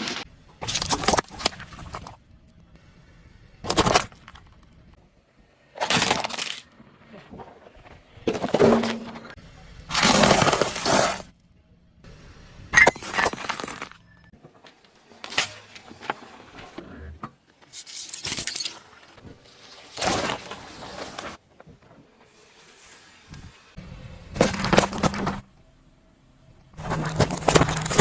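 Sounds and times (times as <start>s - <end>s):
brittle objects crushed under tyres: 5.7s - 9.2s, 9.9s - 11.4s, 24.4s - 25.5s, 26.8s - 28.0s.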